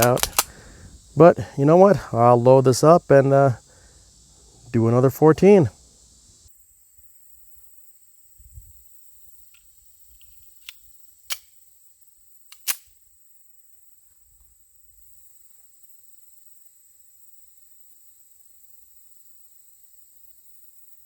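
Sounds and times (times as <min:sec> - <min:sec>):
pistol metallic clicks: 0:00.0 - 0:00.7, 0:09.6 - 0:11.6, 0:12.5 - 0:13.0.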